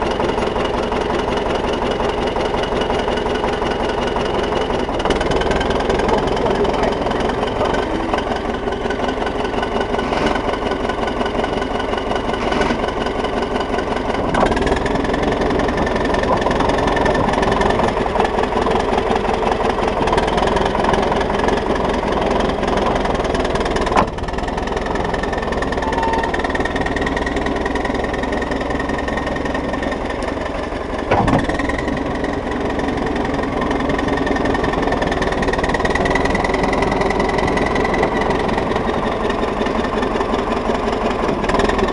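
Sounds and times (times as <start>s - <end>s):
bulldozer diesel engine running: 0.0s - 41.9s
sharp clunks: 23.9s - 24.2s, 31.1s - 31.6s.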